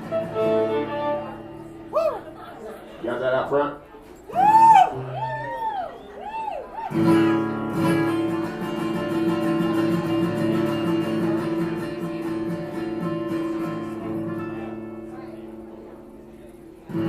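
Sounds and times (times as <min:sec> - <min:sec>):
acoustic guitar strumming: 0:00.0 - 0:02.8, 0:06.9 - 0:17.0
bluegrass string band: 0:00.0 - 0:06.2, 0:06.8 - 0:17.0.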